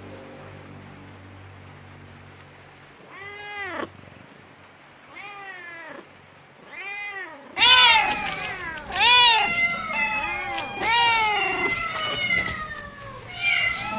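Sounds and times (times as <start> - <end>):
kitten meowing: 6.7 - 13.9.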